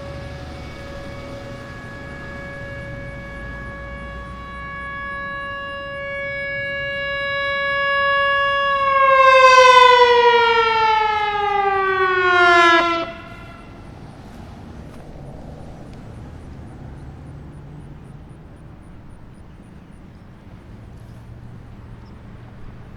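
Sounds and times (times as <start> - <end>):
outdoor warning siren: 0.0 - 22.9.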